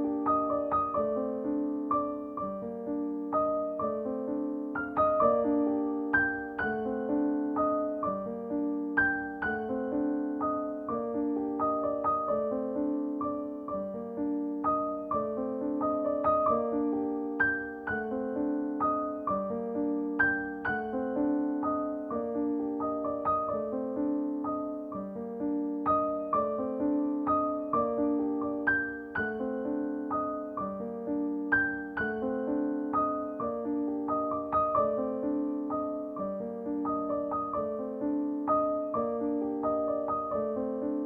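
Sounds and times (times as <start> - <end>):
gentle piano music: 0.0 - 41.0.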